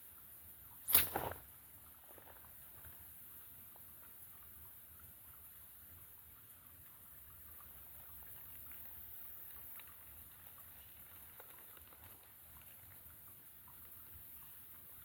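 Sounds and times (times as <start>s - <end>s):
steady hiss: 0.0s - 4.3s
small clicks and ticks: 7.4s - 15.0s.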